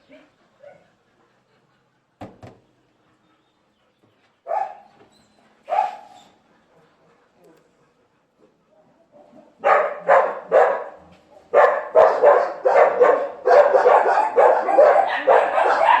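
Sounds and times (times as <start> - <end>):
dog barking: 4.5 - 4.9, 5.7 - 6.2, 9.5 - 16.0.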